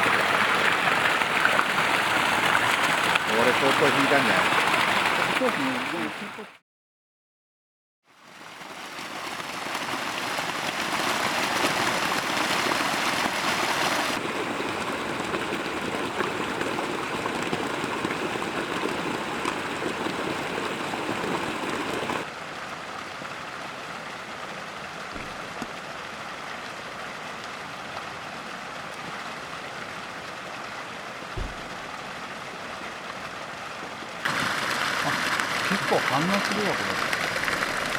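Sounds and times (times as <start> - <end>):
faint low thump: 25.2 - 25.4, 31.4 - 31.8
water hissing: 31.4 - 31.8.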